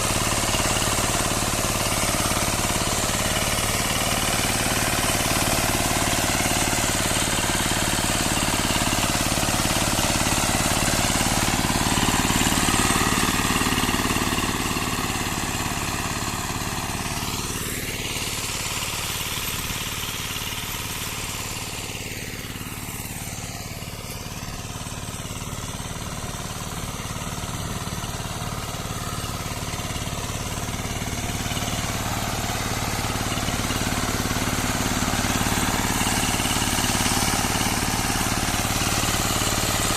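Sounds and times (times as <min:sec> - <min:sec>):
tractor engine running under load: 0:00.0 - 0:39.9.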